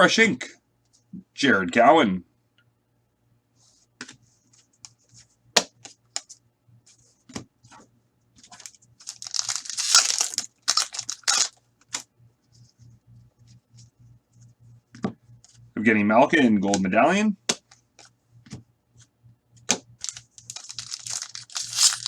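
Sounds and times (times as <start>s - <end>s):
wrapper tearing open: 9.0s - 11.6s, 20.0s - 22.0s.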